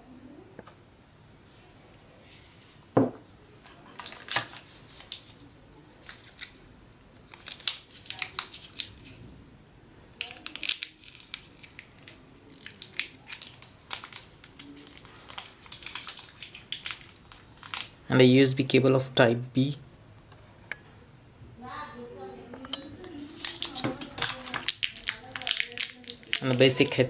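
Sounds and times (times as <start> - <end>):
knock: 3.0 - 3.2
plastic packaging crinkling: 3.9 - 5.4, 7.3 - 9.2, 10.2 - 18.0, 22.9 - 27.0.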